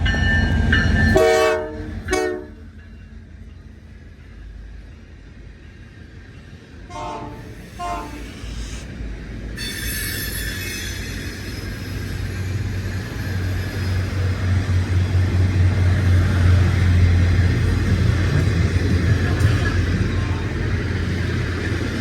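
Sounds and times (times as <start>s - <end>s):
rail noise: 0.0s - 22.0s
train engine drone: 0.0s - 22.0s
locomotive air horn blasts: 1.1s - 2.6s, 6.9s - 8.4s.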